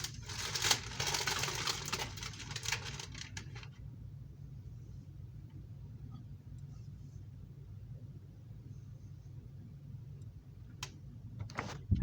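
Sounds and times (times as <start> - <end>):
rustling and scraping handling noise: 0.0 - 3.8
steady low hum: 0.0 - 12.0.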